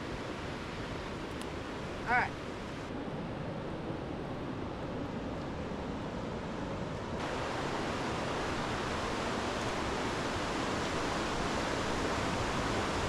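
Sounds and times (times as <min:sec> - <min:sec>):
river rushing over rapids: 0:00.0 - 0:03.1, 0:05.6 - 0:13.0.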